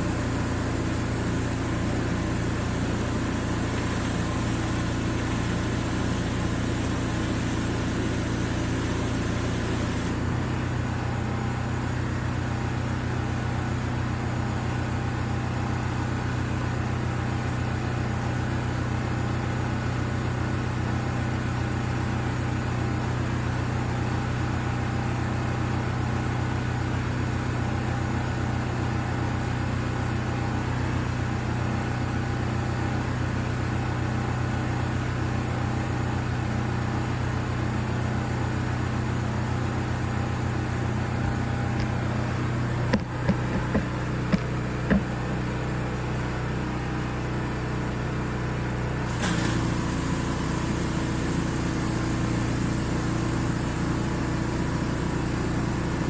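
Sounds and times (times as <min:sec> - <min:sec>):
water spray hiss: 0:00.0 - 0:10.2, 0:49.1 - 0:56.0
pressure washer engine droning: 0:00.0 - 0:11.4, 0:38.9 - 0:56.0.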